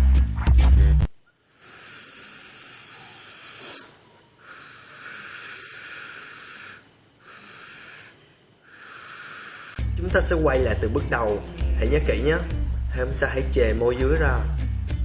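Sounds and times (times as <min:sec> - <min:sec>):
high breathy whistle: 0:01.6 - 0:09.8.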